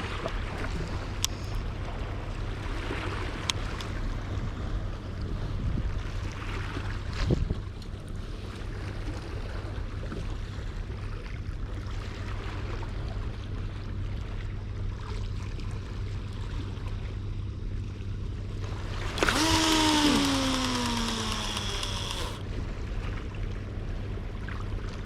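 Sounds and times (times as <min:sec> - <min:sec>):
wind: 0:00.0 - 0:09.0, 0:09.8 - 0:25.0
fishing reel spool whining: 0:19.2 - 0:22.4.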